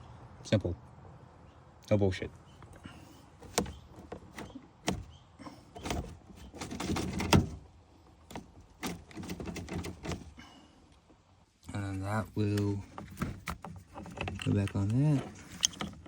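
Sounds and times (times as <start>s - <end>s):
door latch clicks and rattles: 13.0s - 16.0s.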